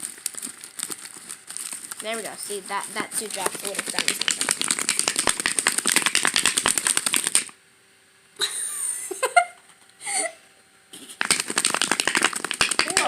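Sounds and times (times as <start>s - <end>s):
slime stirred with sticky clicks: 0.0s - 7.6s.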